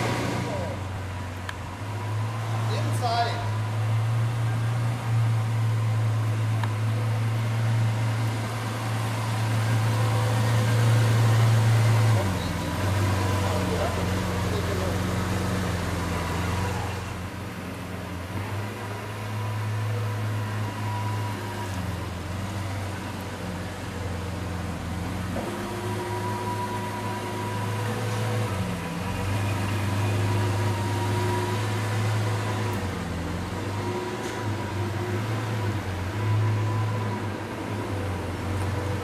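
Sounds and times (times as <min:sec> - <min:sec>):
car engine idling: 0:00.0 - 0:20.7.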